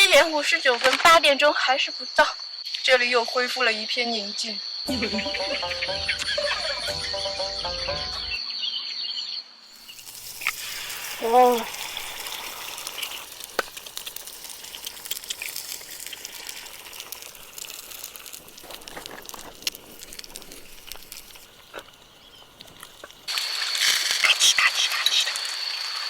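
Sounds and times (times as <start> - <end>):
steady outdoor hiss: 0.0 - 8.6, 9.4 - 26.0
steady high-pitched tone: 4.9 - 8.4.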